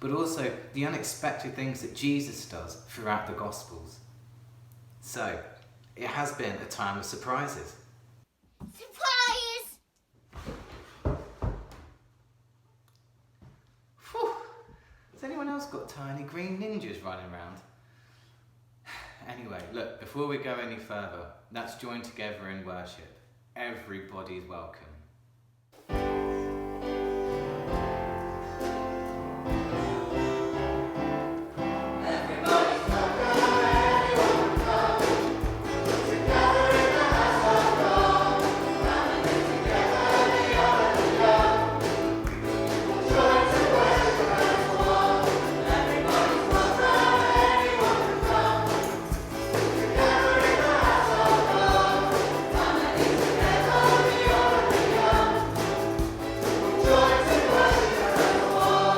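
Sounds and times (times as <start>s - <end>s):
band backing: 25.8s - 58.9s
group singing worship song: 31.6s - 58.9s.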